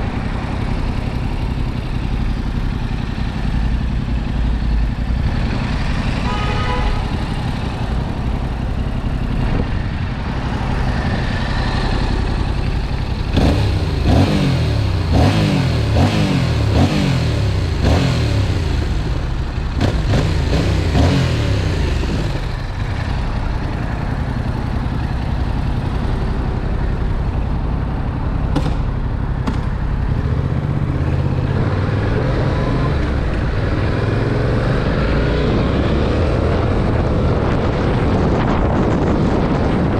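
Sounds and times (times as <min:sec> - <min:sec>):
motorcycle engine and exhaust: 0:00.0 - 0:39.9
wind on microphone: 0:07.5 - 0:12.6, 0:34.8 - 0:39.9.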